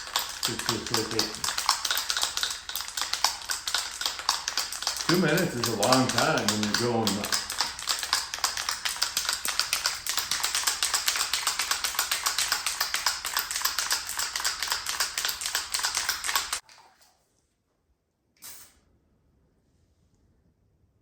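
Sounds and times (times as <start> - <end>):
aerosol can being shaken: 0.0 - 16.6.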